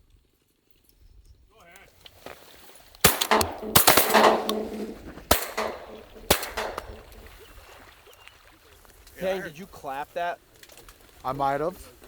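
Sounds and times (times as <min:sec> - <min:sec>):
shotgun shots: 0:03.1 - 0:07.2.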